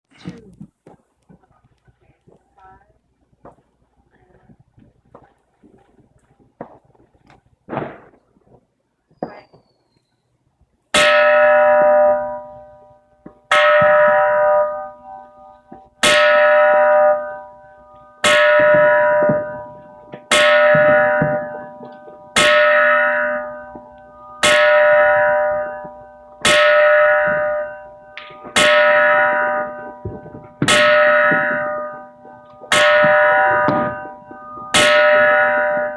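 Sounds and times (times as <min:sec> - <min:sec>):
temple bell ringing: 0:11.0 - 0:35.9.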